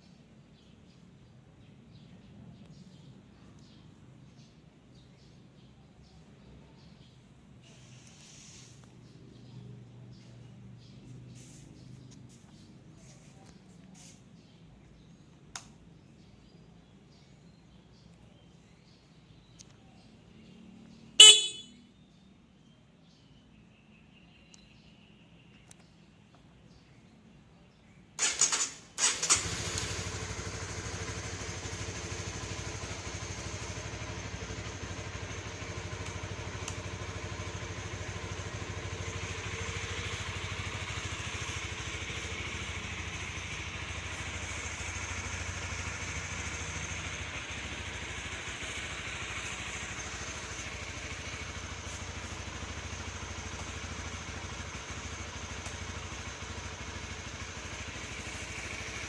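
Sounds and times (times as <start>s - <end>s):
motorcycle engine idling: 0.1s - 23.8s, 24.4s - 59.0s
electric starter bursts: 28.2s - 31.1s.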